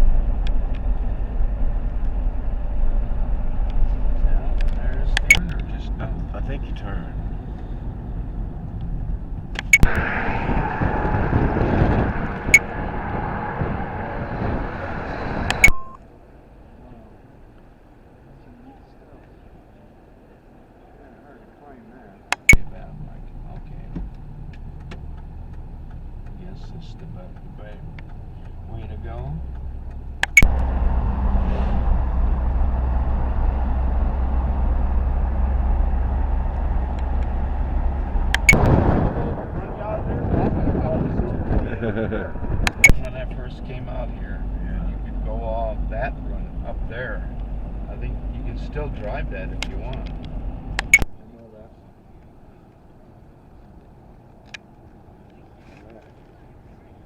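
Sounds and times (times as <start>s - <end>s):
vehicle rumble and road noise: 0.0s - 57.0s
short click: 4.6s - 5.6s, 30.2s - 30.5s, 42.6s - 43.1s
sharp clicks: 4.6s - 5.7s, 9.5s - 10.0s, 15.5s - 16.0s, 22.3s - 22.7s, 23.6s - 28.7s, 29.4s - 30.6s, 38.3s - 38.8s, 42.6s - 43.1s, 49.6s - 51.2s.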